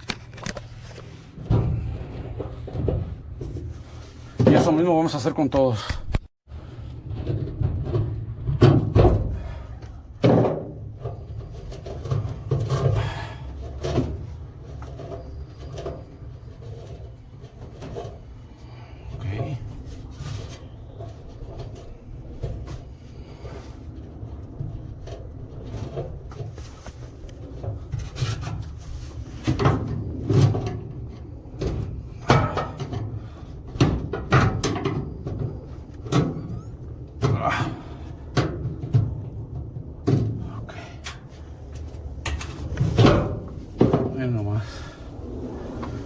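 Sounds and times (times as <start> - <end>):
rubbing and scraping strokes: 11.1 - 32.2.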